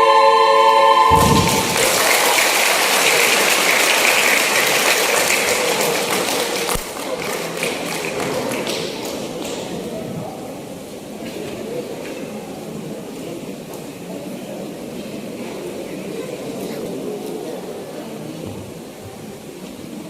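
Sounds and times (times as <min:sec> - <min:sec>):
choir final chord: 0:00.0 - 0:03.7
audience applause: 0:01.1 - 0:09.9.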